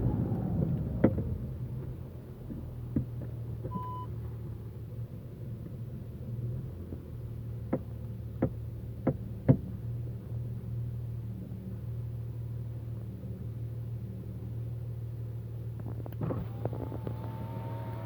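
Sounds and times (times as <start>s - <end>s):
diesel engine running: 0.0s - 2.9s
sharp clunks from car front end: 7.7s - 9.8s.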